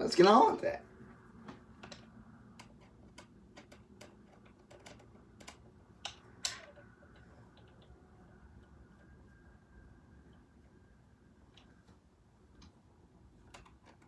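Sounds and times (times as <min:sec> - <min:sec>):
plastic toy parts clicking: 0:01.8 - 0:08.0.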